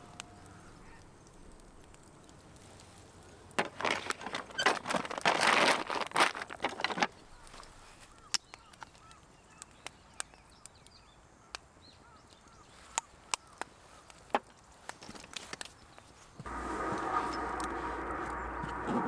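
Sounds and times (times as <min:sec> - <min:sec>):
wood fire crackling and popping: 0:00.0 - 0:10.9, 0:16.4 - 0:19.0.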